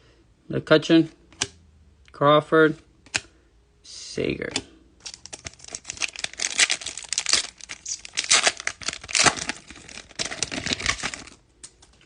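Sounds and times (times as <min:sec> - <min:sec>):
plastic wrapper crinkling and tearing: 0:05.0 - 0:11.8.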